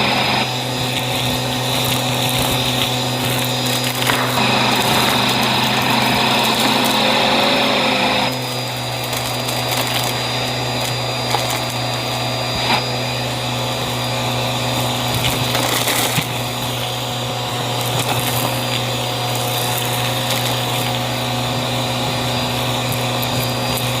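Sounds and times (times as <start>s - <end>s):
vacuum cleaner running: 0.0s - 24.0s.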